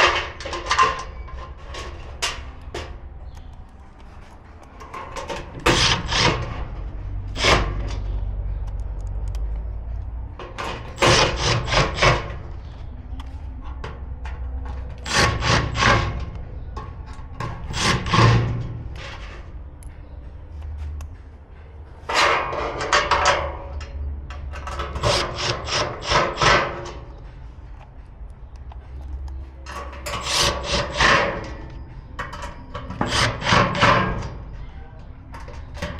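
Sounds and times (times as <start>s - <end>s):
rough scraping and rubbing strokes: 5.6s - 8.2s, 10.6s - 12.8s, 30.0s - 31.7s.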